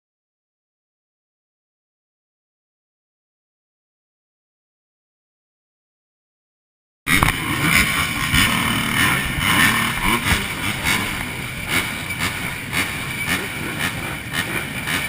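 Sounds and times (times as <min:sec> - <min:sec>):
motorcycle engines revving: 0:07.1 - 0:15.0.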